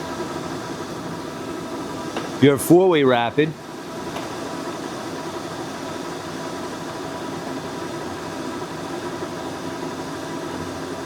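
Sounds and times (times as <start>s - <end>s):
lathe running: 0.0s - 11.0s.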